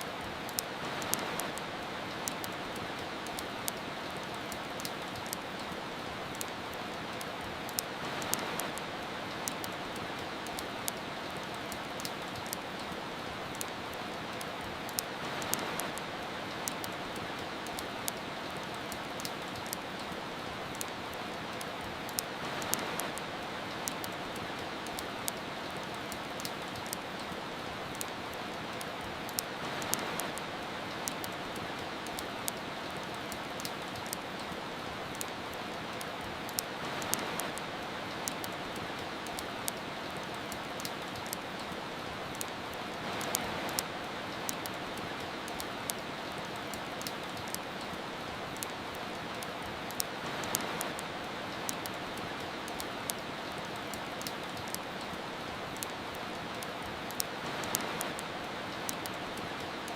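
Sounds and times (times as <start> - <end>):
steady rain hiss: 0.0 - 59.9
wood fire crackling: 0.0 - 59.9.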